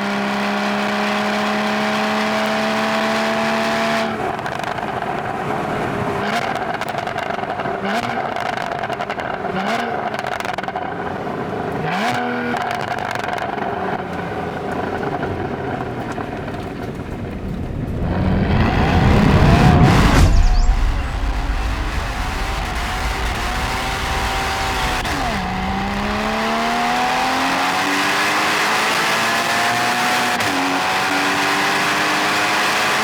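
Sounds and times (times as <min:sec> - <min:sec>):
sports car engine revving: 0:00.0 - 0:33.0
exhaust crackles: 0:12.4 - 0:29.1.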